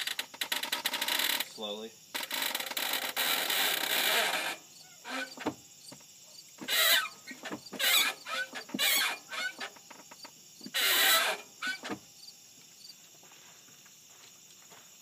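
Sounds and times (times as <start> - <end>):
clutch pedal squeaking: 2.2 - 5.5, 6.6 - 12.0.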